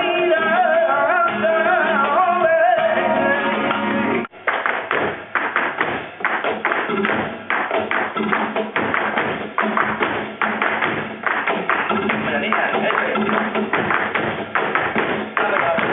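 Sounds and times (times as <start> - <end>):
person singing: 0.0 - 3.6
guitar: 0.0 - 4.3
dancer's feet stamping: 4.3 - 15.9.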